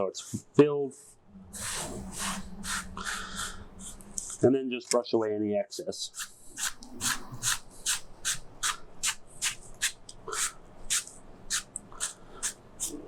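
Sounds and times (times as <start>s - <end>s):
brush sweeping sand on stone: 1.6s - 2.9s.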